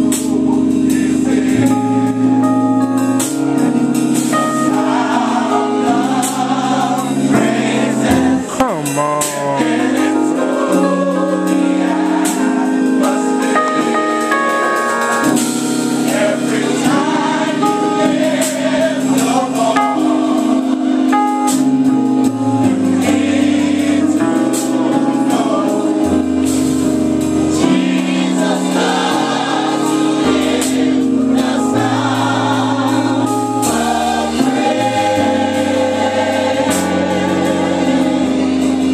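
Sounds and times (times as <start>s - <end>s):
gospel choir singing: 0.0s - 38.9s
sustained keyboard chords: 0.0s - 38.9s
bass line: 7.4s - 11.2s.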